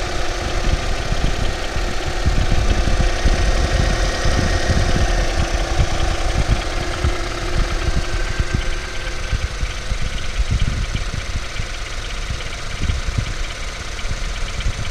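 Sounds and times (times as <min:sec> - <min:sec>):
car engine running: 0:00.0 - 0:14.9
engine knock thumps: 0:00.0 - 0:14.9.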